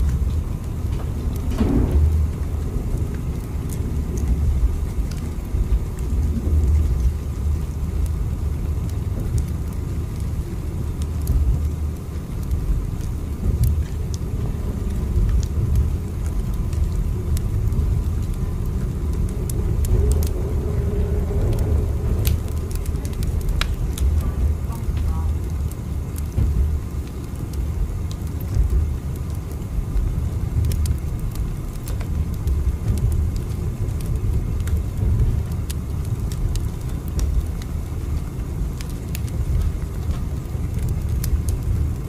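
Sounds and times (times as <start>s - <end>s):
train rumbling on track: 0.0s - 9.4s, 11.2s - 26.9s
faint clicks and rattles: 0.0s - 42.0s.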